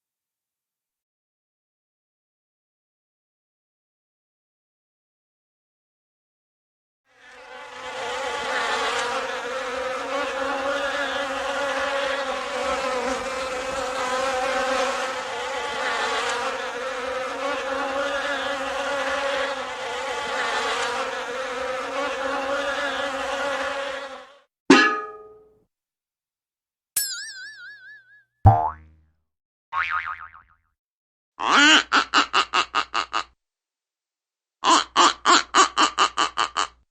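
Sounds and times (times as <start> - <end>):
fly buzzing: 7.1 - 24.5.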